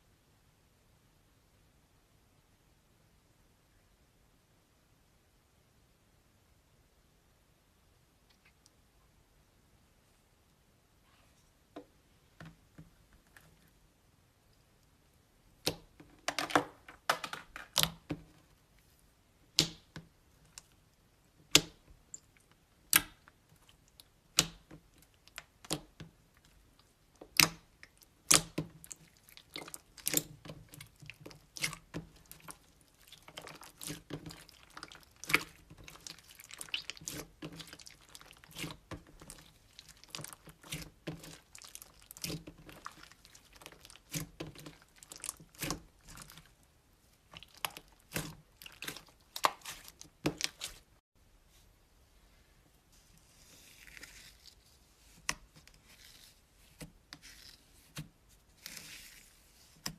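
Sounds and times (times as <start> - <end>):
slime popping and crackling: 21.4 - 46.6, 47.3 - 50.8.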